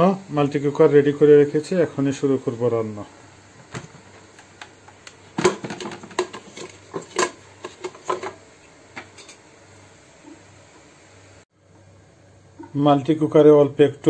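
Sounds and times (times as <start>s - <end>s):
kitchenware clicks and knocks: 5.0s - 8.4s.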